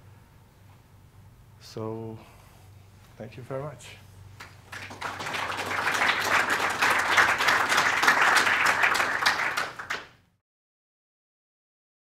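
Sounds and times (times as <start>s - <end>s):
audience applauding: 4.4s - 10.2s.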